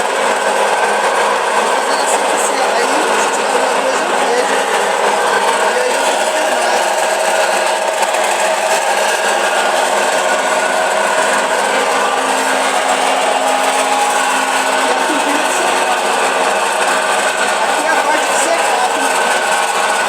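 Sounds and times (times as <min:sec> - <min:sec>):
washing machine spin rubbing noise: 0:00.0 - 0:20.0.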